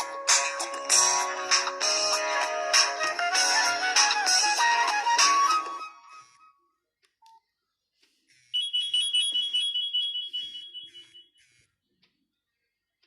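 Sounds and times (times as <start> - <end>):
fast-pulsing electronic alert: 8.3 - 11.7
phone ringtone melody: 8.5 - 11.4.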